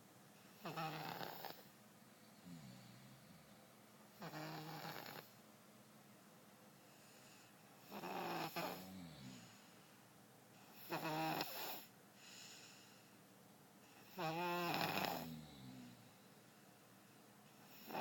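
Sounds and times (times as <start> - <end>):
baby snoring: 0.6 - 1.7, 4.2 - 5.4, 7.8 - 9.6, 10.7 - 11.9, 14.0 - 16.0, 17.6 - 18.0.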